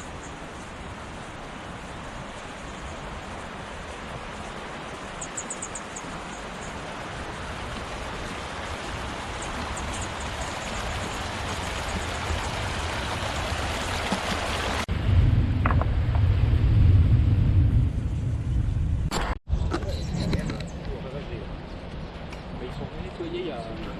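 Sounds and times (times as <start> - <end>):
flowing water rushing: 0.0 - 14.9
loud low rumble: 14.9 - 19.2.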